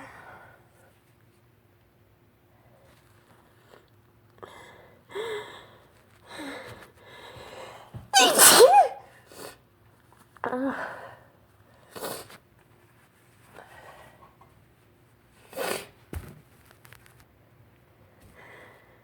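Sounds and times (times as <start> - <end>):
sharp voiced breath: 8.2 - 9.0
person sneezing: 8.2 - 9.1.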